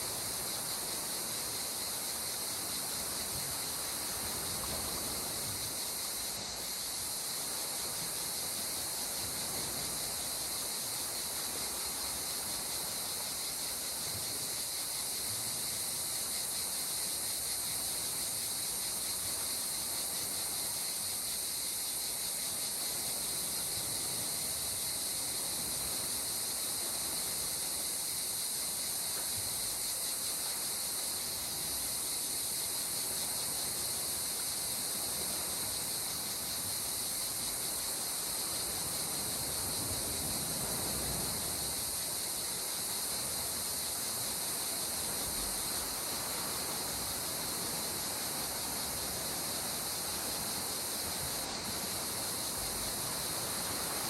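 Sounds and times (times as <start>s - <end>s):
high-pitched hiss: 0.0s - 54.0s.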